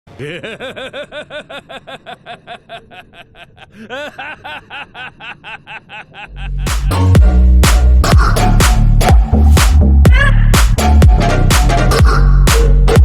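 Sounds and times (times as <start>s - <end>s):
snickering laugh: 0.1s - 6.8s
loud music with heavy bass: 6.5s - 13.0s.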